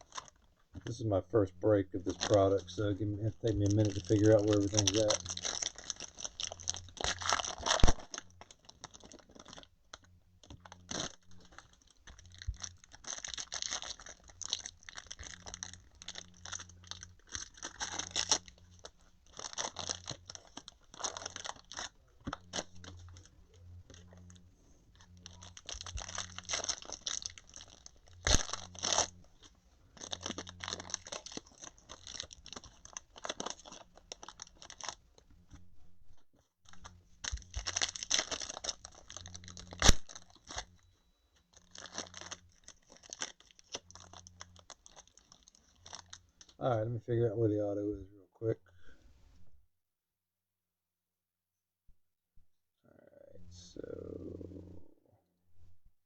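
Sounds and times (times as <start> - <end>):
card wrappers tearing and crinkling: 0.0 - 24.4, 25.0 - 35.3, 36.7 - 40.8, 41.4 - 46.6
cards rustling and clicking: 2.0 - 23.3.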